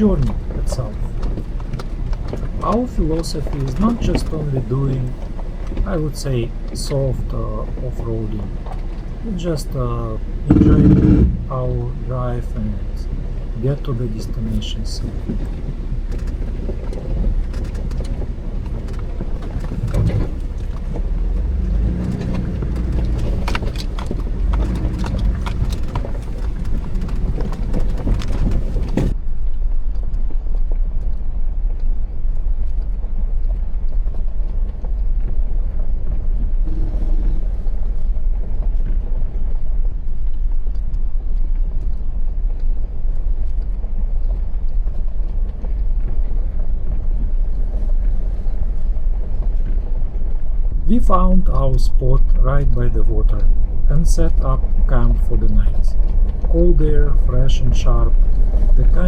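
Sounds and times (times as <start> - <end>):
rattles and gravel ticks: 0.0 - 29.1, 50.9 - 59.0
engine and tyre rumble: 0.0 - 29.2, 31.6 - 59.0.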